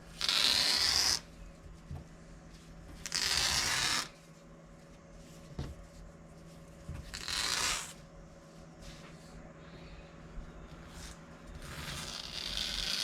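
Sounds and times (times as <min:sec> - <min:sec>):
cloth ripping: 0:00.1 - 0:01.3, 0:03.0 - 0:04.2, 0:07.1 - 0:08.0, 0:11.0 - 0:13.0.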